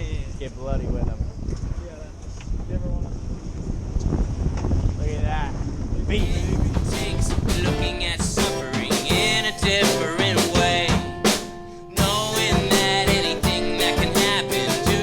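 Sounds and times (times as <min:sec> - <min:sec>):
drum kit beat: 0:06.2 - 0:15.0
person singing: 0:06.2 - 0:15.0.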